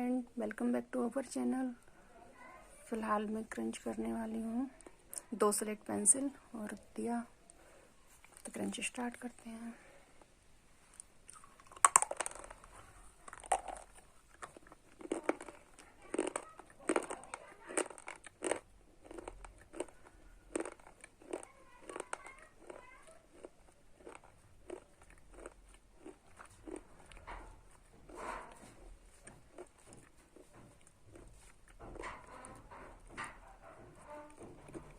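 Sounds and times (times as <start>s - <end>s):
crunchy chewing: 10.2s - 34.9s.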